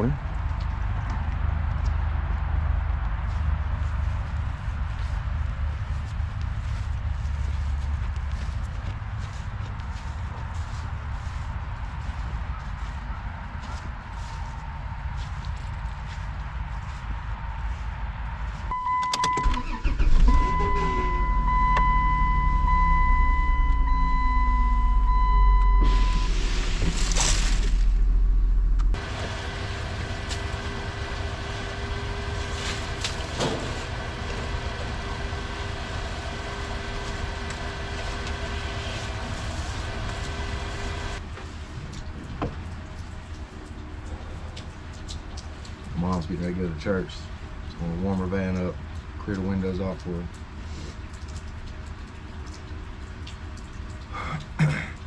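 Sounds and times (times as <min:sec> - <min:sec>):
electronic dashboard tone: 0:18.7 - 0:26.5
van engine starting and running: 0:18.7 - 0:41.2.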